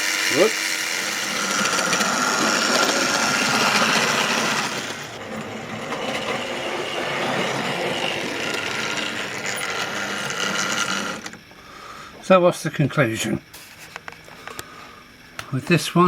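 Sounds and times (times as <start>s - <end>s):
model train motor whining: 0.0s - 12.2s.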